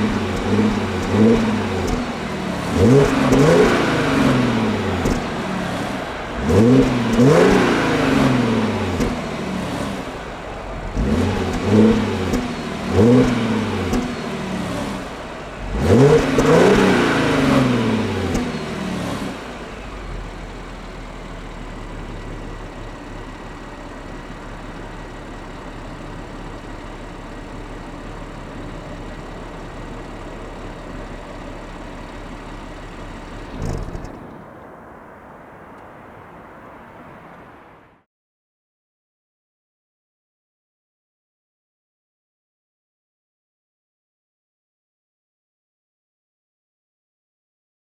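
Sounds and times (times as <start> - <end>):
car engine revving and idling: 0.0 - 38.0.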